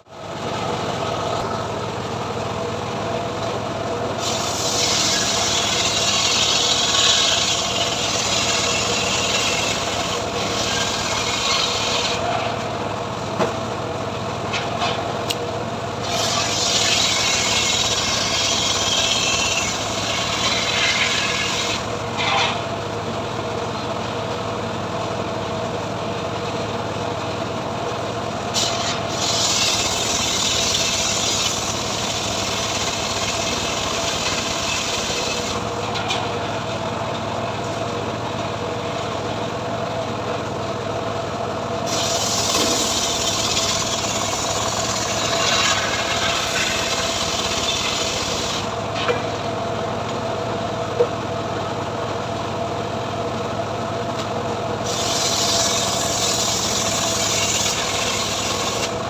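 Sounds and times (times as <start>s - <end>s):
sawmill engine running: 0.0s - 59.0s
saw blade rasping through wood: 4.2s - 12.6s, 16.0s - 22.7s, 28.6s - 36.2s, 41.9s - 49.2s, 54.8s - 59.0s.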